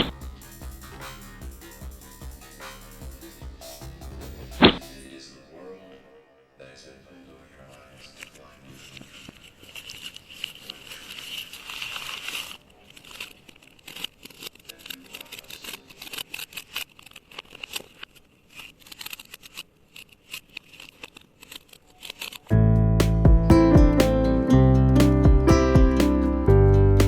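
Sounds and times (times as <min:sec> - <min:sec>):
acoustic guitar music: 0:22.5 - 0:27.0.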